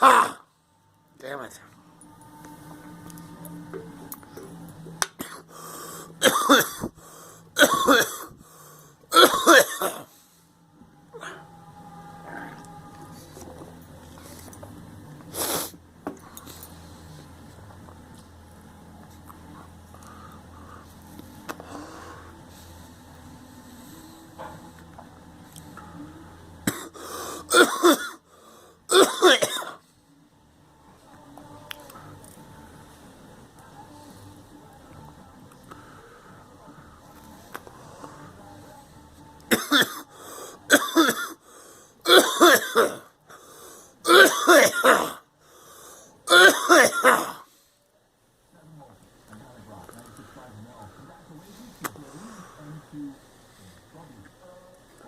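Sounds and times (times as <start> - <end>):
person coughing: 0.0 - 0.4, 5.2 - 5.5, 6.2 - 6.9, 7.6 - 8.3, 9.1 - 10.1, 26.7 - 28.2, 28.9 - 29.8, 39.5 - 40.1, 40.7 - 41.4, 42.1 - 43.1, 44.1 - 45.2, 46.3 - 47.5.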